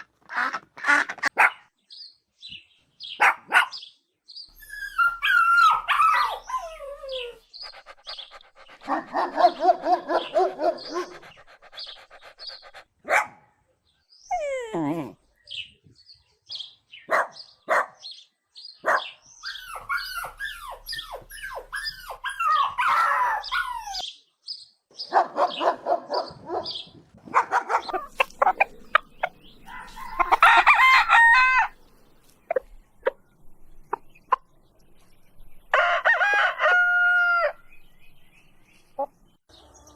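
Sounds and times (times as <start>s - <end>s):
rapid pulsing calls: 7.1s - 12.8s.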